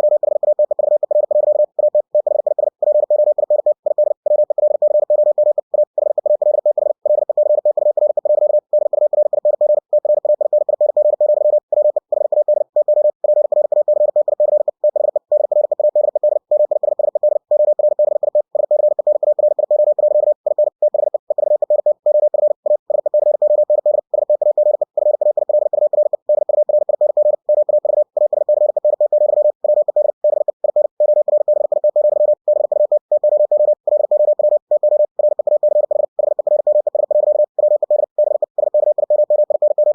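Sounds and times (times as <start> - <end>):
morse code tone: 0.0 - 39.9.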